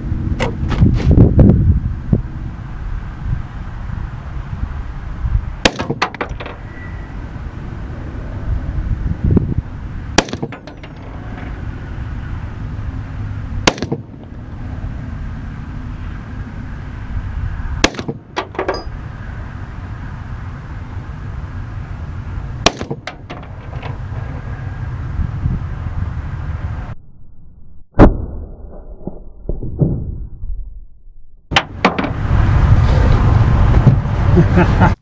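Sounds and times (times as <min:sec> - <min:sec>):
rifle shots: 0:05.6 - 0:06.2, 0:10.2 - 0:10.8, 0:13.6 - 0:14.2, 0:17.8 - 0:18.4, 0:22.6 - 0:23.2.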